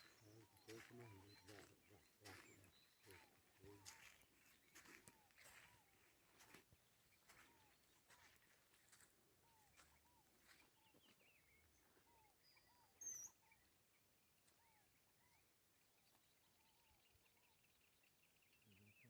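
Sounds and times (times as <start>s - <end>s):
small bird chirps: 9.6s - 13.7s.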